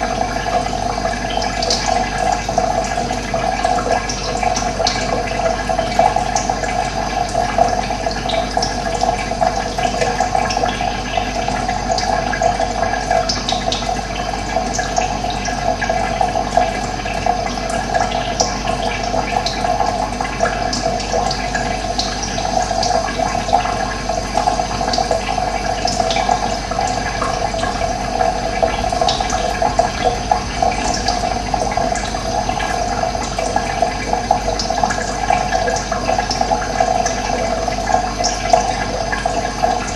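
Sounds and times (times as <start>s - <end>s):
running water splashing: 24.6s - 39.9s.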